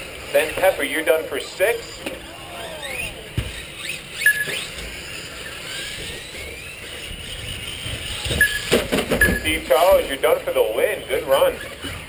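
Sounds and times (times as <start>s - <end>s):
rc truck motors whining: 0.0s - 12.0s.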